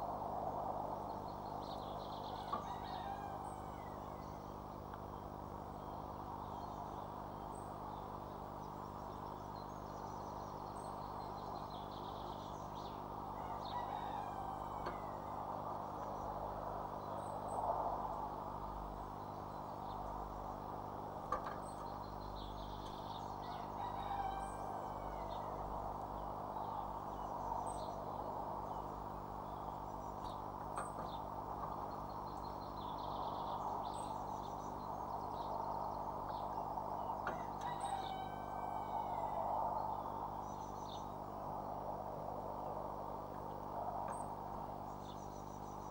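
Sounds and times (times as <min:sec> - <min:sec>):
steady low hum: 0:00.0 - 0:45.9
birds chirping and singing: 0:21.3 - 0:41.3.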